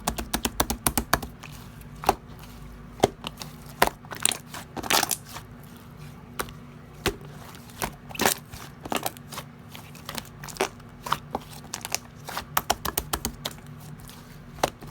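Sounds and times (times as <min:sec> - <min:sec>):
steady low hum: 0:00.0 - 0:14.9.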